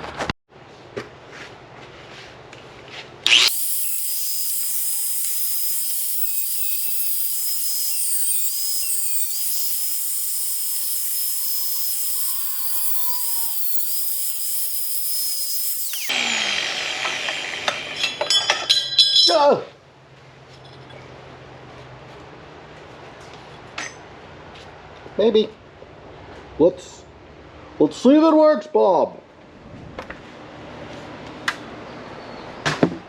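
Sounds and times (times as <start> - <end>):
grinder cutting sheet steel: 3.3 - 19.0.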